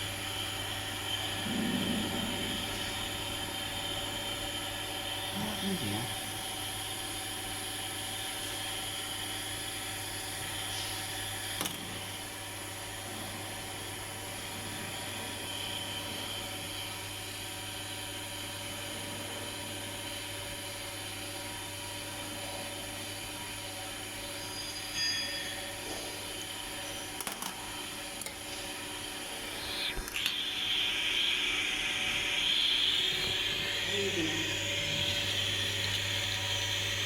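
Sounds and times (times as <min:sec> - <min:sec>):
steady machine hum: 0:00.0 - 0:37.0.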